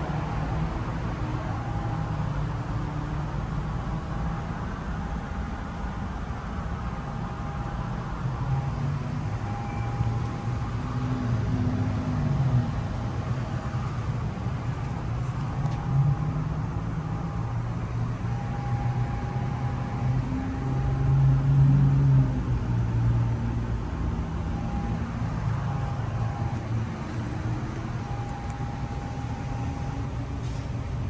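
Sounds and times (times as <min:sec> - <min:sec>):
faint whine: 0:06.4 - 0:21.8, 0:23.6 - 0:31.0.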